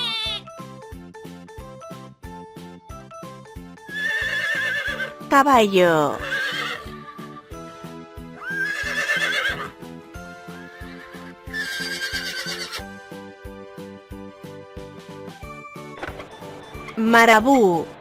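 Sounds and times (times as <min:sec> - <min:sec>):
horse neighing: 0:00.0 - 0:00.4, 0:03.9 - 0:05.2, 0:06.0 - 0:06.9, 0:08.4 - 0:09.8, 0:10.6 - 0:12.9
background music with steady beat: 0:00.0 - 0:18.0.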